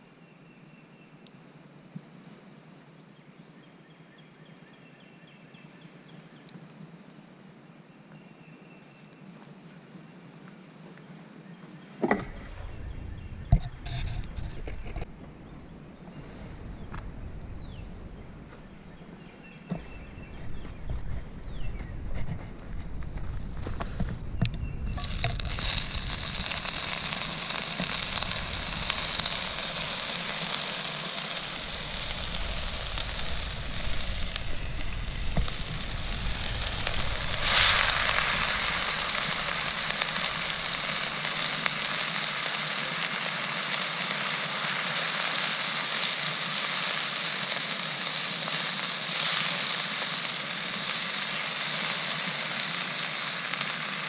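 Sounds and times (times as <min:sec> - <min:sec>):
fine crackling: 0:16.2 - 0:54.0
food sizzling in a pan: 0:24.9 - 0:54.0.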